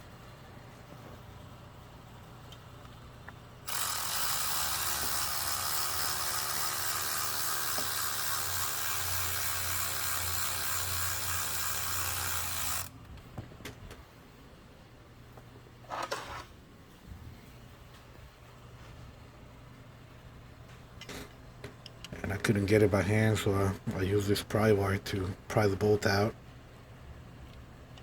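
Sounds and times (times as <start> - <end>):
cordless power tool spinning: 3.7 - 12.9.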